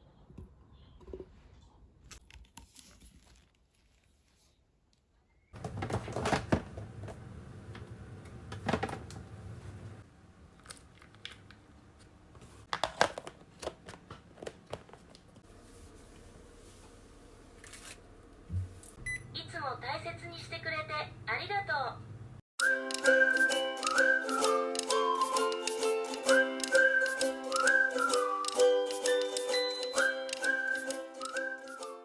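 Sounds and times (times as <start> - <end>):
material crinkling and rustling: 2.2 - 5.1.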